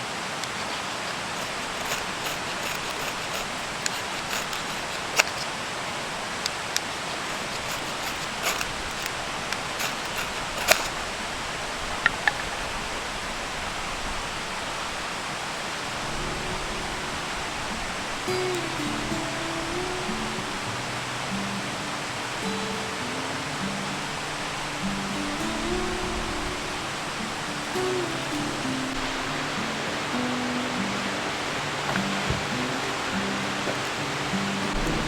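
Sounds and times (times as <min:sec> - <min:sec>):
steady rushing noise: 0:00.0 - 0:35.0
sharp clicks and pops: 0:00.4 - 0:05.5, 0:06.4 - 0:11.0
low music notes: 0:16.0 - 0:35.0.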